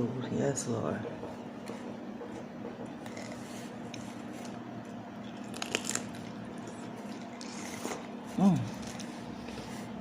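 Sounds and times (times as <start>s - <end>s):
steady low hum: 0.0s - 10.0s
person chewing food: 5.2s - 9.6s.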